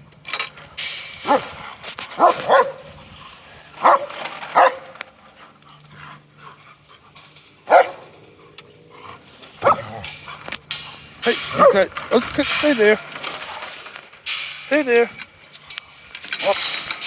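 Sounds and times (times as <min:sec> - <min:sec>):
dogs barking: 0:01.2 - 0:03.0, 0:03.8 - 0:05.1, 0:06.4 - 0:11.9.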